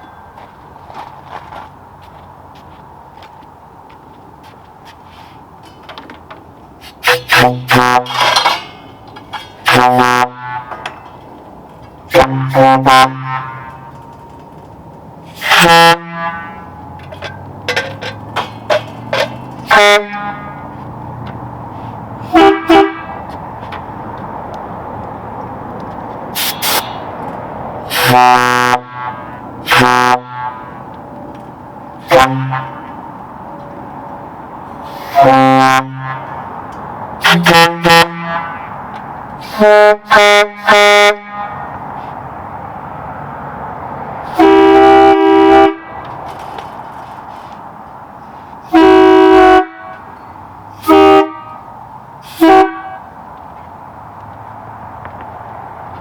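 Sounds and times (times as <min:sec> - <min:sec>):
truck air horn blasts: 0:06.8 - 0:08.8, 0:09.6 - 0:10.9, 0:12.1 - 0:14.0, 0:15.3 - 0:16.9, 0:19.1 - 0:20.8, 0:22.2 - 0:23.3, 0:26.4 - 0:27.1, 0:27.9 - 0:30.8, 0:32.0 - 0:33.0, 0:34.8 - 0:36.4, 0:37.2 - 0:38.8, 0:39.4 - 0:41.8, 0:44.2 - 0:46.0, 0:48.6 - 0:50.1, 0:50.8 - 0:53.1
short hisses of air: 0:26.4 - 0:27.0.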